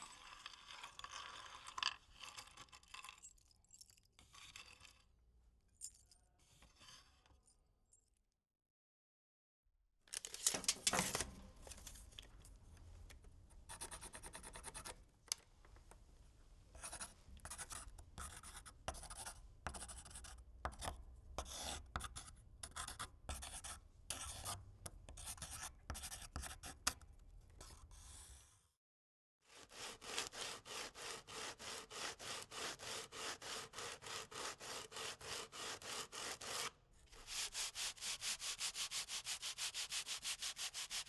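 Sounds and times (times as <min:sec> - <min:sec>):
hand tool scraping wood: 0:29.6 - 0:41.0.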